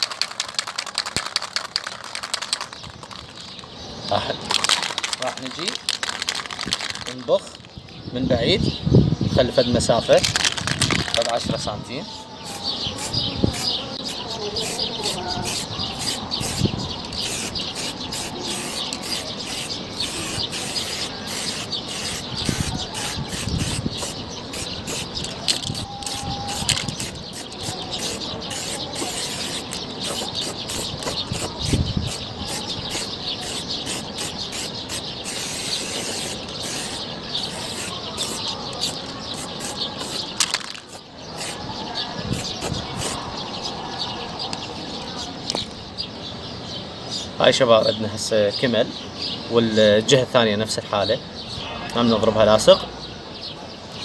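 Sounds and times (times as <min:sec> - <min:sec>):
spray paint can hissing: 0:00.0 - 0:03.7, 0:04.5 - 0:07.5, 0:12.4 - 0:41.6, 0:42.3 - 0:43.2.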